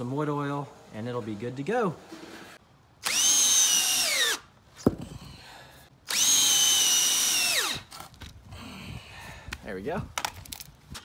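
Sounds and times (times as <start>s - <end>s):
power drill motor whine: 3.0s - 4.4s, 6.1s - 7.9s.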